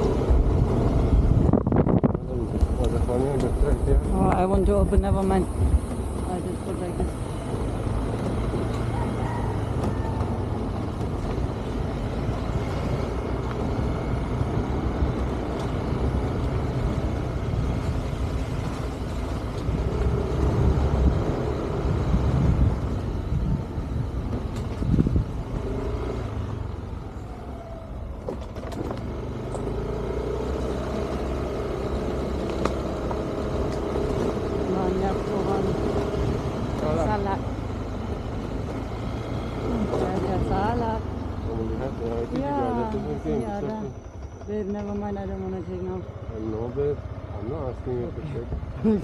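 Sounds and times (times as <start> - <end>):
wind noise on microphone: 0.0 - 6.3, 16.6 - 25.6
motorbike engine rumbling: 0.0 - 49.0.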